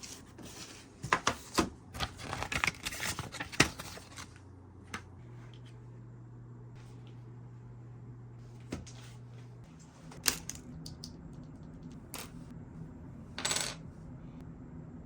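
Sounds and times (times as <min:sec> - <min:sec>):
steady low hum: 0:03.2 - 0:15.0.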